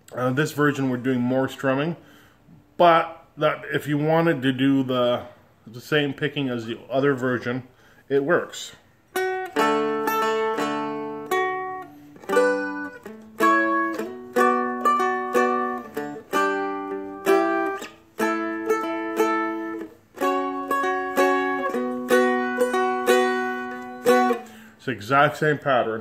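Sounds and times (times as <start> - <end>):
dulcimer strummed chords: 9.2 - 24.6.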